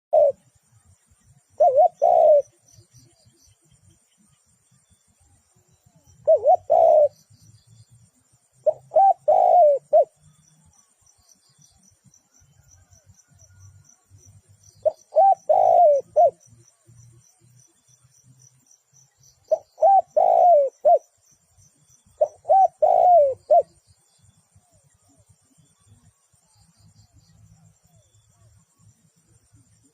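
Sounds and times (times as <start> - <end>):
dove cooing: 0.1 - 0.5, 1.6 - 3.0, 6.1 - 7.3, 8.6 - 10.4, 14.8 - 16.5, 19.5 - 21.2, 22.1 - 23.8.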